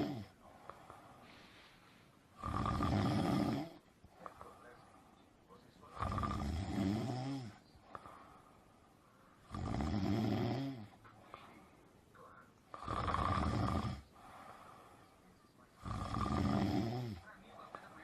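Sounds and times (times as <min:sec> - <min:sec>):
dog snoring: 0:00.0 - 0:00.9, 0:02.4 - 0:04.6, 0:05.8 - 0:07.6, 0:09.4 - 0:11.0, 0:12.7 - 0:14.8, 0:15.8 - 0:18.0
dog breathing: 0:12.7 - 0:16.7.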